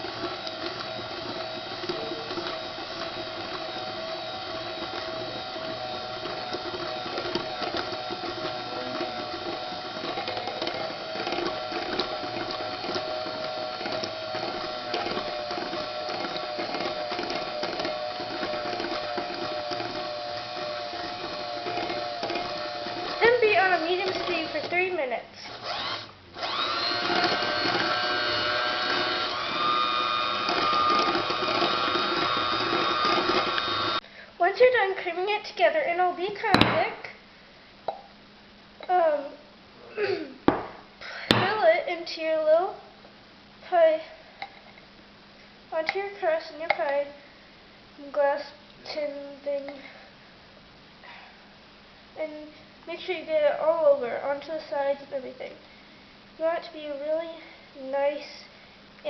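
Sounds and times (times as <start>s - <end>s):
electric mixer whining: 0.0s - 34.0s.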